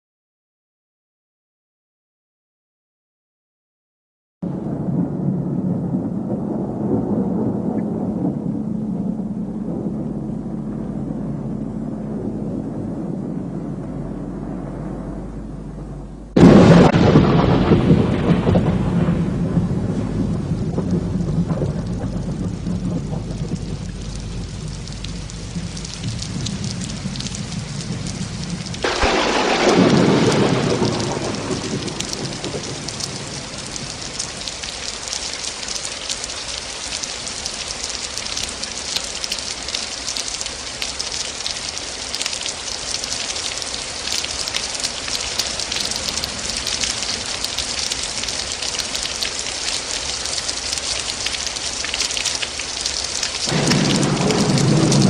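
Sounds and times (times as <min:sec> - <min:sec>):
loud thunderclap: 0:04.4 - 0:35.0, 0:53.4 - 0:55.0
heavy rain: 0:04.4 - 0:55.0
low thunder rumbling: 0:04.4 - 0:55.0.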